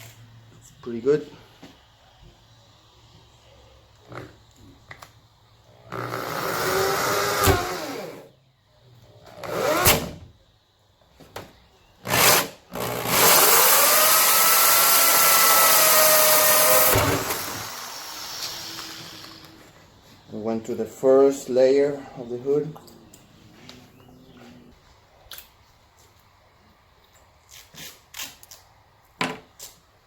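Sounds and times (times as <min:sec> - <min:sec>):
power drill cutting fiberglass: 0:05.9 - 0:08.3, 0:12.0 - 0:19.6.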